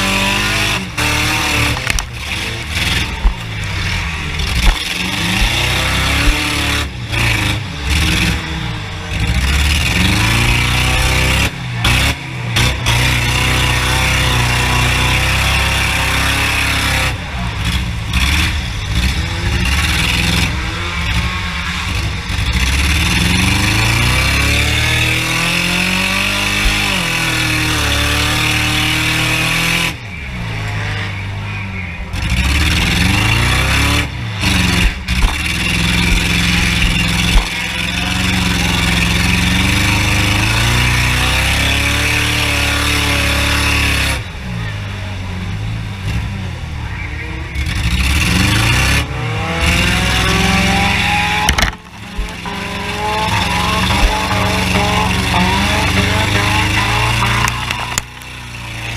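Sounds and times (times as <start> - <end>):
race car engines revving: 0.0 - 58.9.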